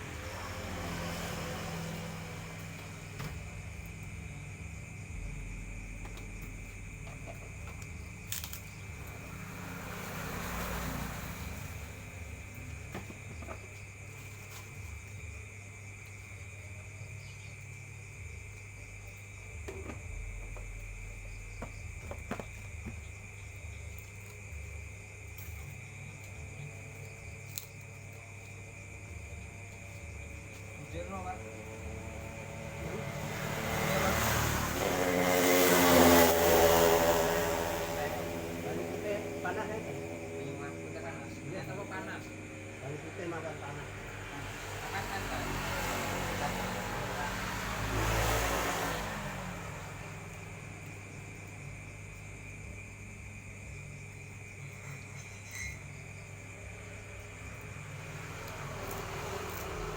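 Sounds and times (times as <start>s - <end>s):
vehicle passing: 0.0s - 16.0s, 28.6s - 54.0s, 56.2s - 59.9s
high insect chirr: 0.0s - 59.9s.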